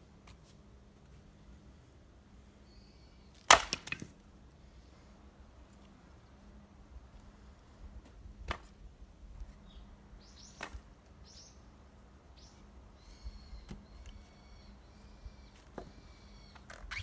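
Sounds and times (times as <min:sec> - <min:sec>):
small birds chirping: 0:02.6 - 0:03.4, 0:09.5 - 0:11.7, 0:12.3 - 0:17.0
axe chopping firewood: 0:03.5 - 0:04.1.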